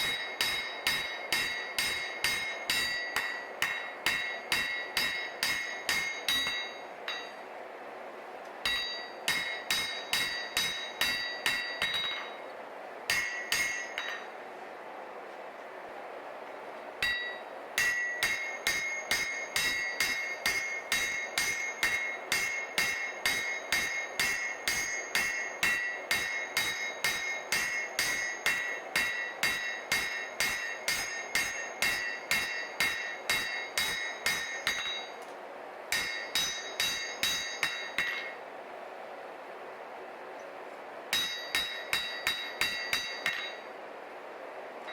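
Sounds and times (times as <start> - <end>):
hammer on steel anvil: 0.0 - 7.4, 8.6 - 12.4, 13.1 - 14.4, 17.0 - 35.3, 35.9 - 38.4, 41.1 - 43.7.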